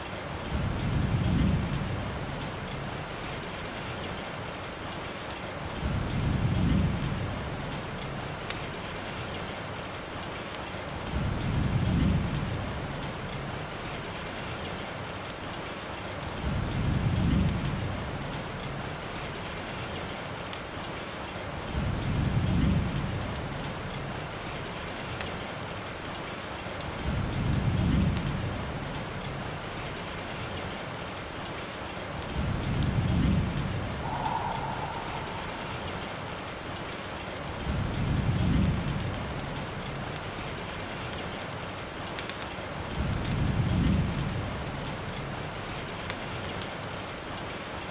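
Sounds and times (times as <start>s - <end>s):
steady rain: 0.0s - 47.9s
low rumble: 32.7s - 36.8s.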